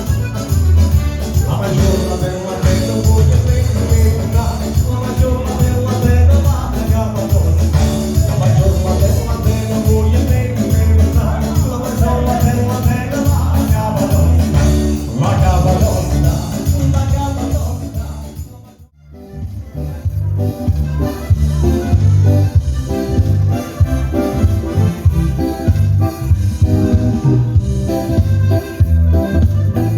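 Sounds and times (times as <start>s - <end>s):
pulsing bass beat: 0.0s - 18.6s, 19.3s - 29.9s
live dance band music: 0.0s - 29.9s.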